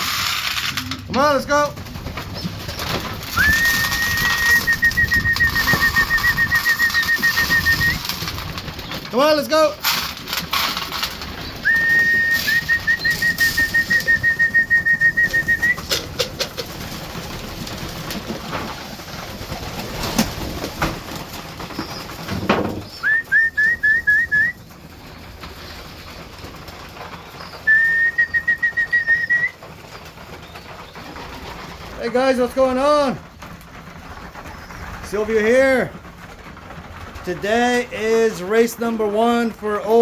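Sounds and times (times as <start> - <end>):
pigeons cooing: 1.8 - 9.1, 9.9 - 37.3
fluttering high whistle: 3.4 - 8.0.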